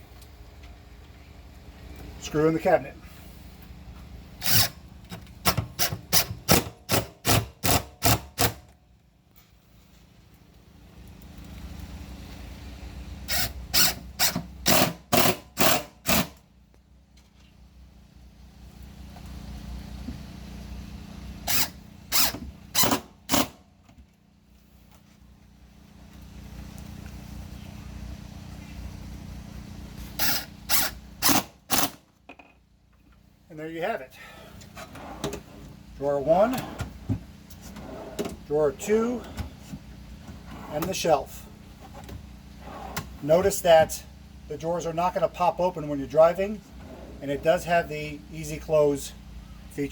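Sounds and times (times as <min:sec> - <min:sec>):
power drill driving a screw: 0:04.4 - 0:04.8, 0:13.3 - 0:16.3, 0:21.4 - 0:23.6, 0:30.2 - 0:32.0.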